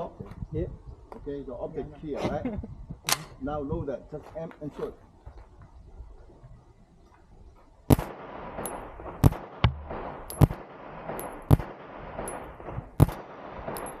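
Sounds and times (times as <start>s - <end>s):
handgun shots: 7.9s - 14.0s.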